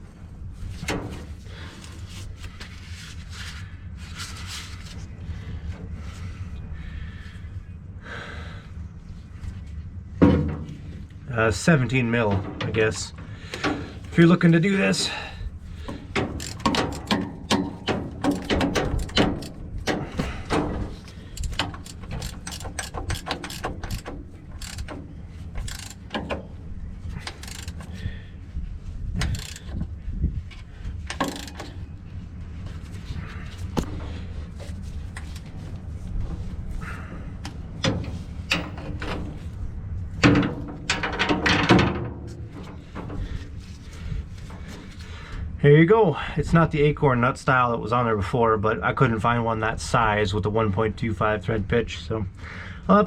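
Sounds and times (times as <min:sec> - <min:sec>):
ratchet wrench clicking: 0:16.1 - 0:19.6, 0:21.3 - 0:26.4, 0:27.1 - 0:28.0, 0:29.2 - 0:29.8, 0:31.1 - 0:31.8.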